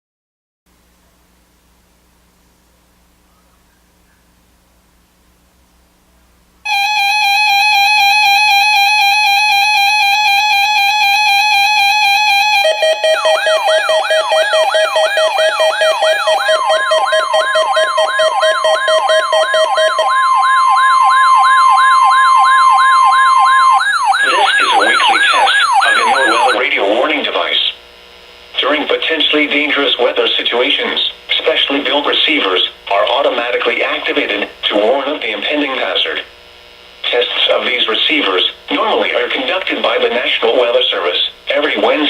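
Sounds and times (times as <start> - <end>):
upward sweeping siren tone: 6.7 - 26.6
second steady electronic tone: 6.7 - 26.8
steady buzzy electronic tone: 6.7 - 29.8.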